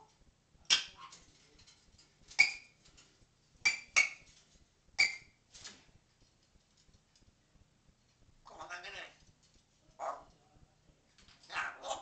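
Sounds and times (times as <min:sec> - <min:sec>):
parrot clinking calls: 0:00.6 - 0:01.2, 0:02.3 - 0:02.9, 0:03.6 - 0:04.4, 0:05.0 - 0:05.4, 0:11.5 - 0:12.0.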